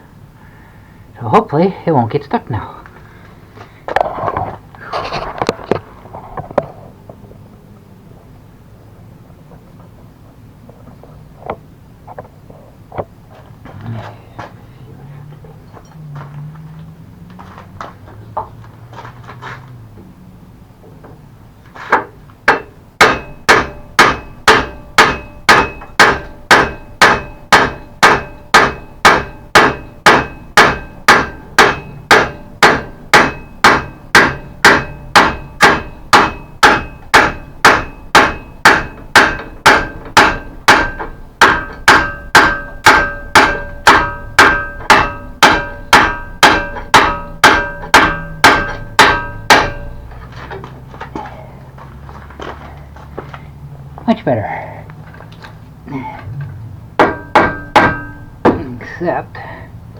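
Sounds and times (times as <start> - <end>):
hammer striking steel rod: 21.9 - 50.2, 57.0 - 58.8.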